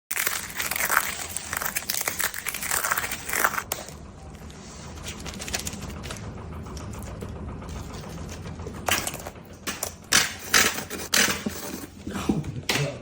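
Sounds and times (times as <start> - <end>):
plastic or paper crinkling: 0.1 - 6.2.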